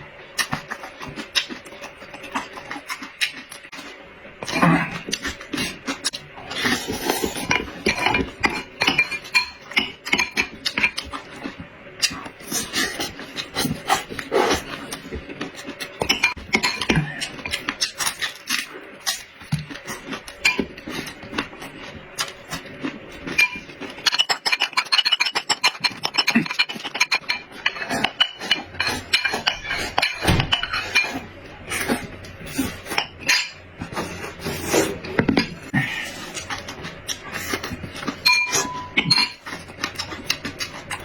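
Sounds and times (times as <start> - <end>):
utensils clinking on dishes: 6.6 - 13.8, 14.5 - 21.5, 23.1 - 41.0.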